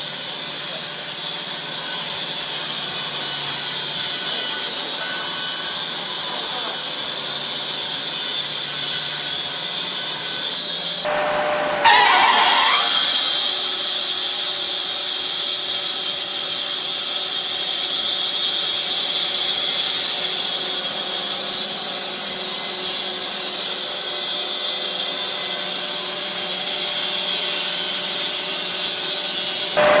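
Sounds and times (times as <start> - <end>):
bandsaw blade cutting log: 11.8 - 30.0.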